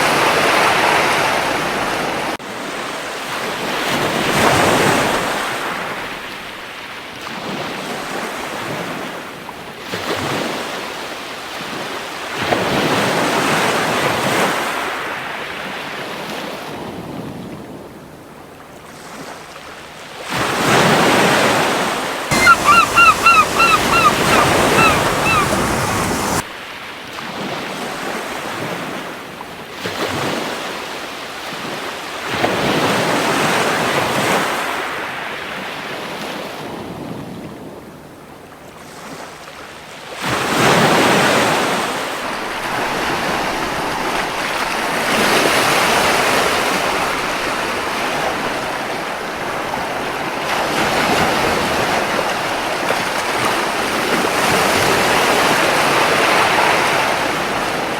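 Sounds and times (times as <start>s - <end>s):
gull calling: 22.3s - 26.4s
surf breaking on a beach: 22.3s - 26.4s.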